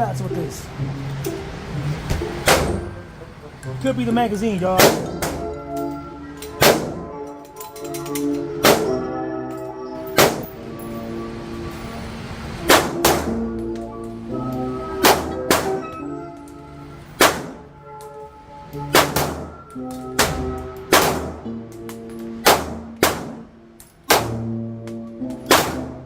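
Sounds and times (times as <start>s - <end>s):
background music: 0.0s - 26.0s
pistol shots: 6.6s - 7.1s, 8.6s - 9.0s, 10.2s - 10.6s, 12.6s - 13.4s, 15.0s - 15.9s, 17.2s - 17.7s, 18.9s - 19.6s, 20.2s - 21.5s, 22.4s - 23.5s, 24.1s - 24.5s, 25.4s - 26.0s.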